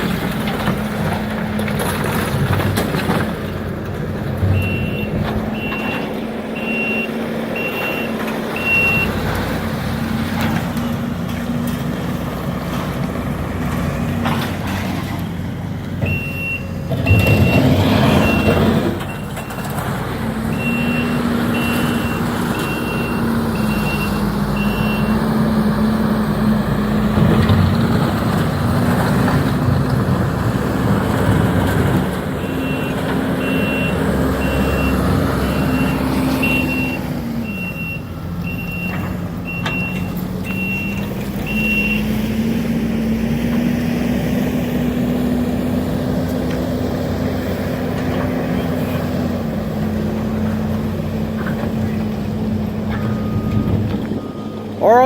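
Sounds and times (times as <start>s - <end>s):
heavy equipment engine drone: 0.0s - 55.0s
backup alarm beeping: 4.5s - 9.2s, 16.0s - 19.8s.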